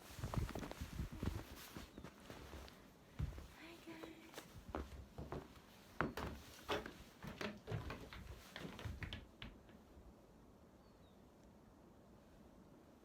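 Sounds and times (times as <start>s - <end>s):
footsteps on snow: 0.0s - 4.9s.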